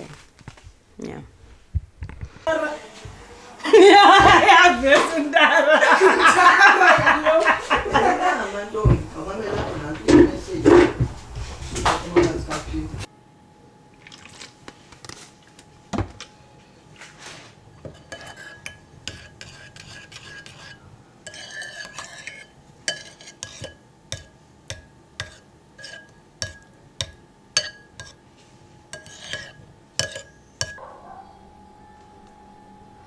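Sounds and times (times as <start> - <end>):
metal spoon clinking against dish: 6.3 - 13.1, 17.9 - 28.2, 28.9 - 30.8.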